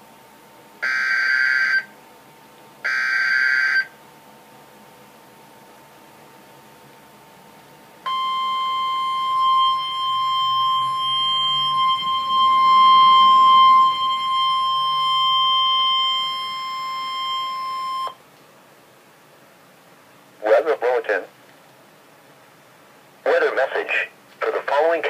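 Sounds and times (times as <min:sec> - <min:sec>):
steady loud alarm tone: 0:00.8 - 0:01.9, 0:02.8 - 0:04.0, 0:08.0 - 0:18.2.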